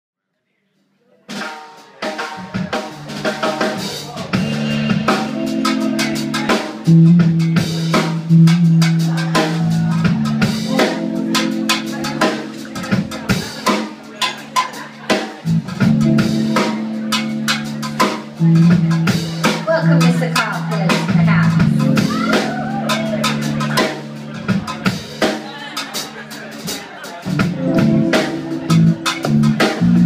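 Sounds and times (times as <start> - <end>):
drum kit groove: 1.3 - 30.0
bass long low notes: 3.0 - 13.5, 15.5 - 24.8, 27.3 - 30.0.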